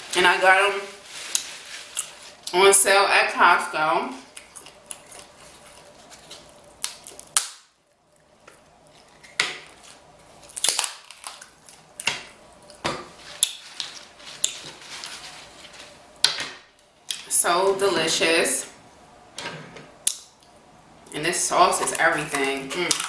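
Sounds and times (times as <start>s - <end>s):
crab shells cracking: 4.3s - 7.7s, 8.5s - 15.1s, 22.8s - 23.0s.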